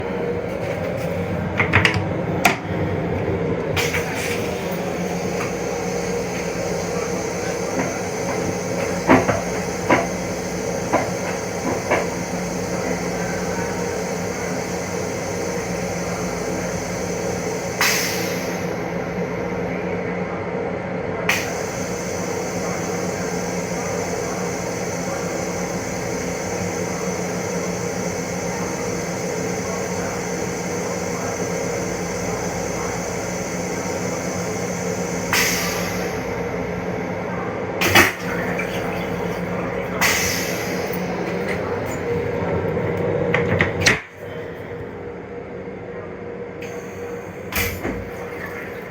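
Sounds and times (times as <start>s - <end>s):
railcar hum and whir: 0.0s - 48.9s.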